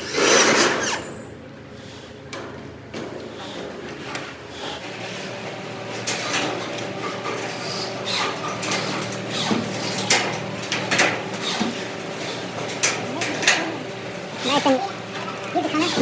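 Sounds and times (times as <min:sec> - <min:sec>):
machine hum: 0:04.8 - 0:16.0
metal parts knocking and clattering: 0:04.9 - 0:16.0.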